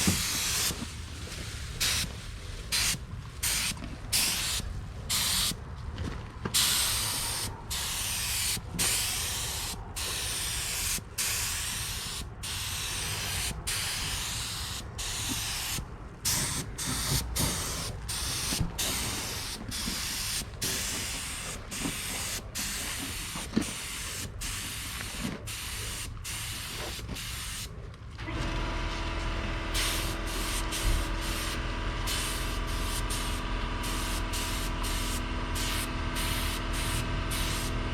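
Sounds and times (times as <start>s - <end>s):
paint spray gun hissing: 0.0s - 0.8s, 1.8s - 2.1s, 2.7s - 5.6s, 6.6s - 27.7s, 29.7s - 37.8s
low machine hum: 28.1s - 37.9s.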